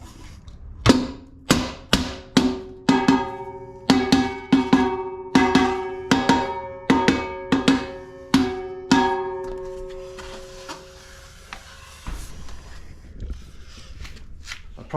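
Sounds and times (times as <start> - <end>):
hubcap knocked onto wheel ringing: 2.2 - 10.3.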